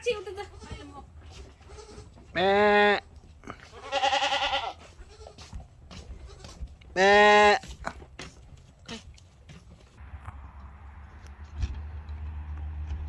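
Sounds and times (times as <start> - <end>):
goats bleating: 0.2 - 8.0.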